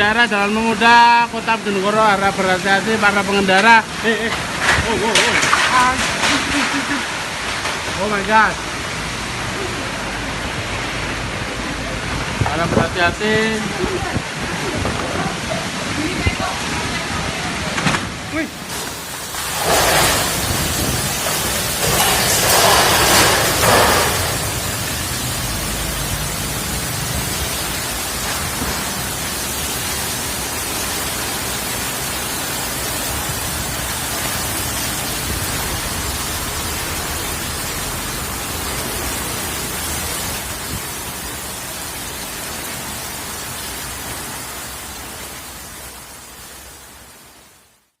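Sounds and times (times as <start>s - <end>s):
heavy rain hissing: 0.0s - 48.0s
strong wind: 10.5s - 25.6s.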